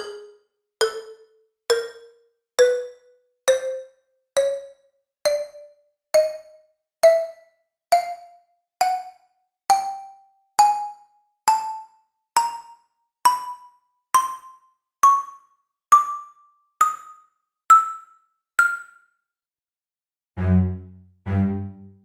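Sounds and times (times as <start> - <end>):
low bowed string note: 20.4 - 22.0.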